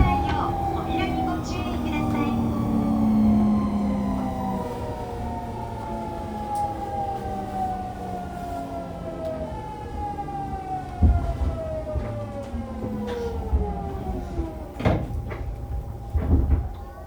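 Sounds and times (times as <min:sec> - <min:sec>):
wheels rumbling on rails: 0:00.0 - 0:17.0.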